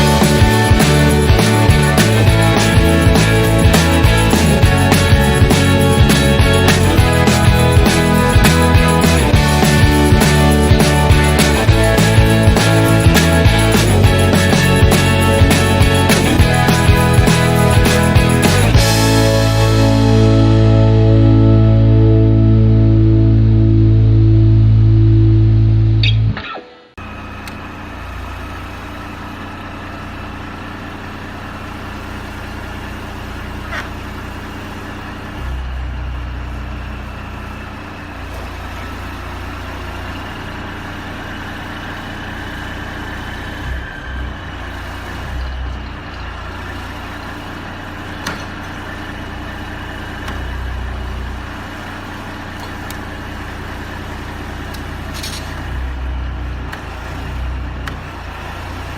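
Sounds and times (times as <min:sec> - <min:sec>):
music: 0:00.0 - 0:26.9
heavy engine running: 0:00.0 - 0:58.9.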